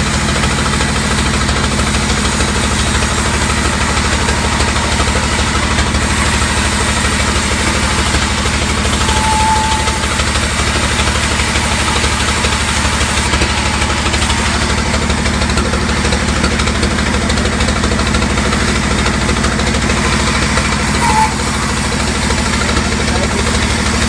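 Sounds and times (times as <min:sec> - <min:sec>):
sawmill engine running: 0:00.0 - 0:24.0
high-pitched whine: 0:08.0 - 0:12.6.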